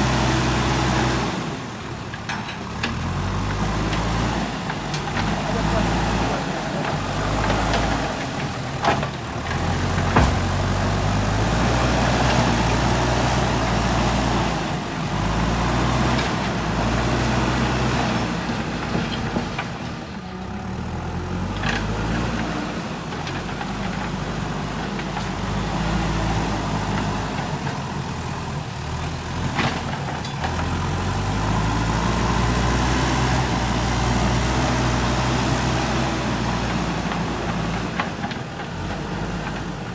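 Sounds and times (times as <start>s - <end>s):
backhoe diesel engine revving: 0.0s - 39.9s
sharp knocks: 10.0s - 10.6s.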